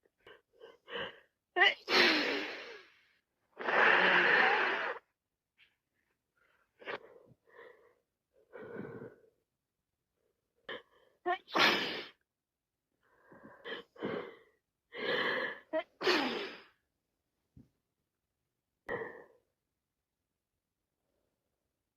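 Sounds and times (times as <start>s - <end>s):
woman sneezing: 1.6s - 2.7s, 11.4s - 12.2s, 15.9s - 16.6s.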